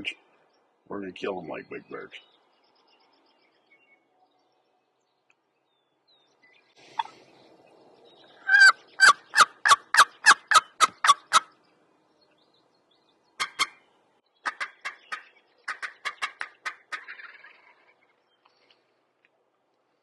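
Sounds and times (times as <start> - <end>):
turkey yelping: 8.4 - 11.5, 13.4 - 13.8, 14.4 - 17.9.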